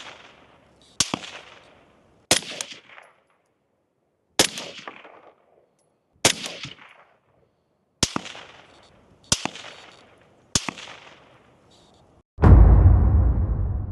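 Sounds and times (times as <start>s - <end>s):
rifle shots with echo: 0.0s - 3.2s, 4.4s - 5.6s, 6.2s - 7.2s, 8.0s - 11.4s.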